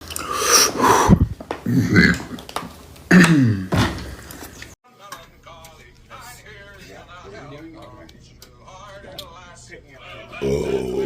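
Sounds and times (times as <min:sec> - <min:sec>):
loud burps: 0:01.6 - 0:02.4, 0:03.1 - 0:03.7, 0:10.4 - 0:11.0.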